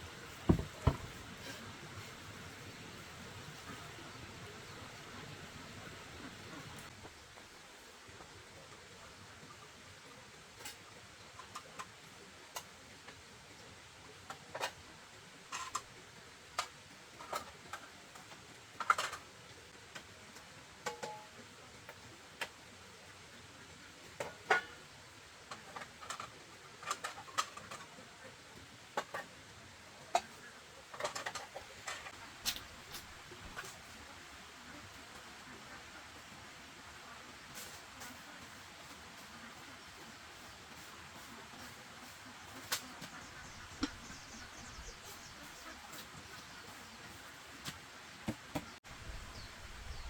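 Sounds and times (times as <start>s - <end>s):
light clicks and knocks: 0.5s - 1.2s.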